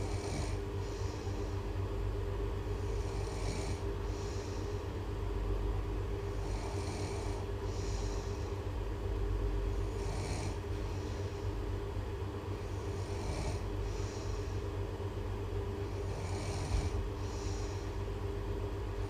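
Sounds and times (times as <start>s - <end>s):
loud snoring: 0.0s - 0.6s, 2.8s - 3.9s, 6.3s - 8.0s, 9.8s - 10.6s, 12.8s - 14.2s, 15.9s - 17.5s
hissing breath: 3.8s - 4.9s.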